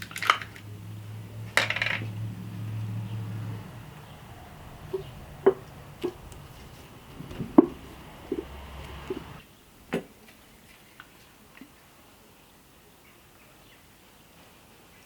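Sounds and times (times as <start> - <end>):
low steady hum: 0.0 - 9.9
utensils knocking against bowls: 4.2 - 9.4.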